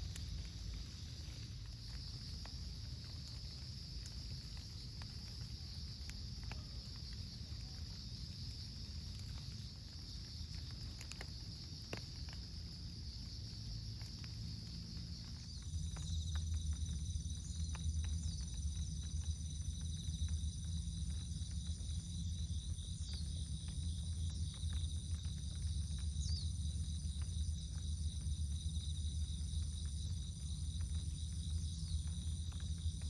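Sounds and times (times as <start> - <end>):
insects chirring: 0.0 - 33.0
low rumble: 14.1 - 33.0.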